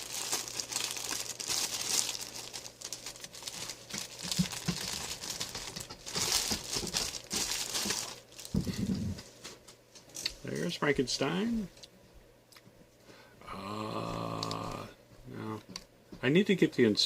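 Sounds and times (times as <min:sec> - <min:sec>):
packaging and tape crinkling: 0:00.0 - 0:09.2.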